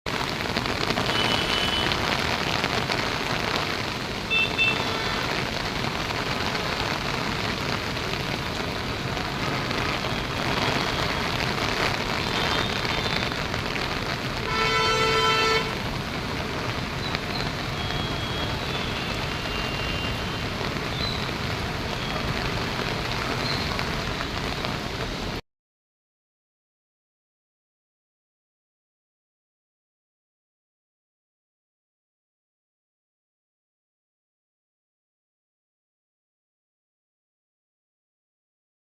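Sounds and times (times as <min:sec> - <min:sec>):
water rushing: 0:00.1 - 0:25.4
vehicle horn: 0:01.0 - 0:02.2, 0:04.3 - 0:05.4, 0:12.2 - 0:13.4, 0:14.4 - 0:15.8, 0:17.8 - 0:20.5.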